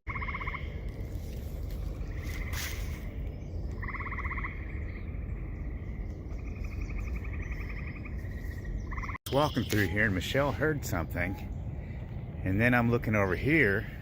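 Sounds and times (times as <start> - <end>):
frogs trilling: 0.1 - 1.2, 1.9 - 10.2
low rumble: 0.1 - 14.0.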